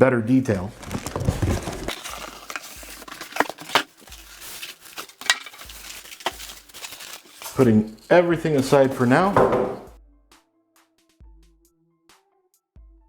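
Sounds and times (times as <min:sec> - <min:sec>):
packaging rustling and crinkling: 0:00.3 - 0:09.9.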